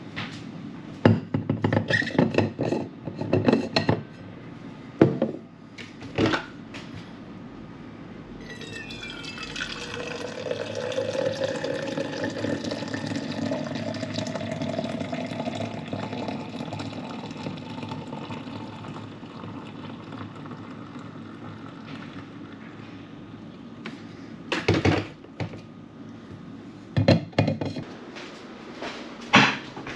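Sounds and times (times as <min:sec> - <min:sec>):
water running into a container: 0:08.5 - 0:22.2.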